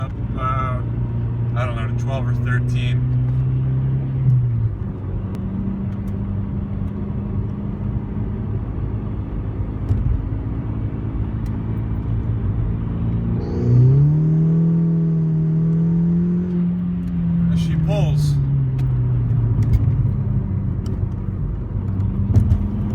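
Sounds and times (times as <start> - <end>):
car engine accelerating: 0.0 - 22.9.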